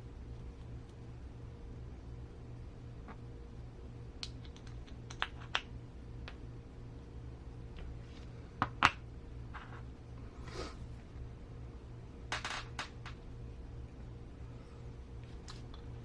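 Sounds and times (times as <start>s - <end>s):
steady low hum: 0.0s - 16.0s
small parts clicking and tapping: 4.2s - 6.4s.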